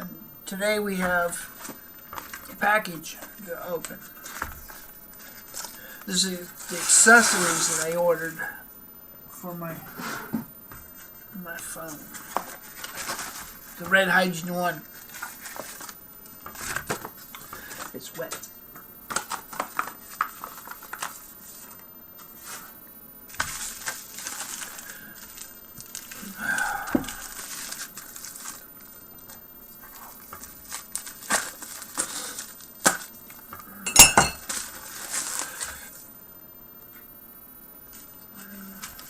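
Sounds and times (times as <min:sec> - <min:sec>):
packaging crinkling and tearing: 0:06.5 - 0:08.0, 0:12.2 - 0:13.8, 0:19.1 - 0:21.3, 0:23.3 - 0:28.7, 0:29.9 - 0:33.4, 0:34.4 - 0:35.9.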